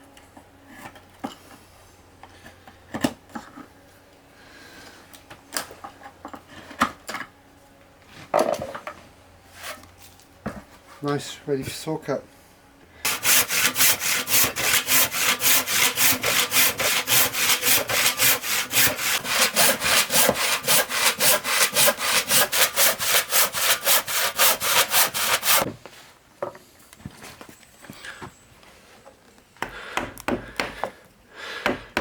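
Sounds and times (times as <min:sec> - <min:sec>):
hand saw cutting wood: 0:13.1 - 0:25.7.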